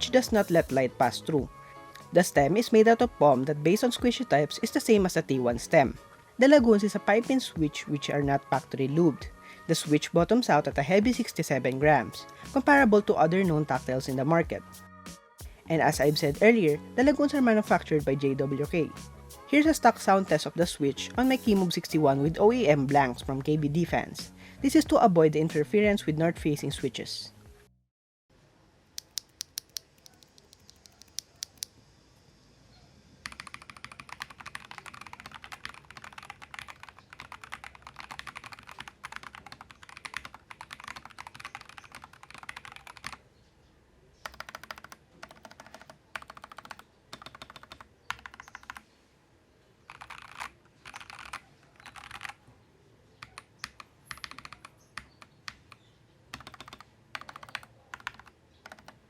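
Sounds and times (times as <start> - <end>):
mechanical keyboard typing: 29.0 - 31.7, 33.2 - 43.2, 44.2 - 48.8, 49.9 - 52.4, 53.2 - 59.0.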